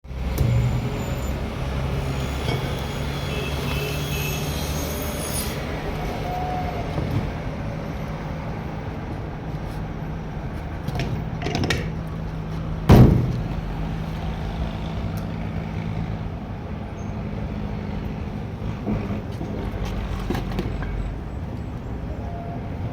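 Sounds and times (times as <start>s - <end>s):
vehicle engine running: 0.1s - 3.8s
loud sharp knock: 0.3s - 2.8s.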